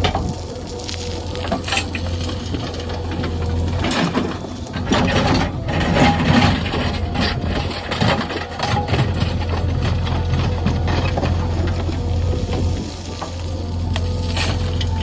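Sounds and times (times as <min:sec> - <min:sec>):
diesel engine running: 0:00.0 - 0:15.0
knocks and crackling scrapes: 0:00.0 - 0:15.0.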